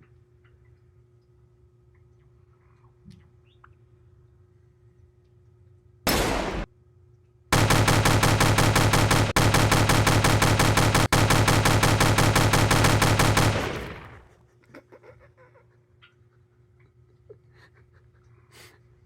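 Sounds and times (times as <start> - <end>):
machine-gun fire: 6.1 - 6.7, 7.5 - 14.3.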